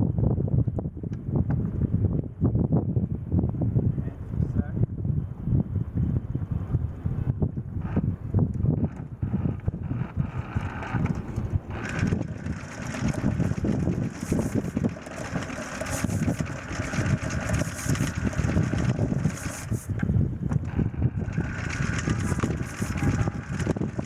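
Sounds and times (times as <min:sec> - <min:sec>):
wind: 0:00.0 - 0:24.0
boat engine running: 0:06.4 - 0:24.0.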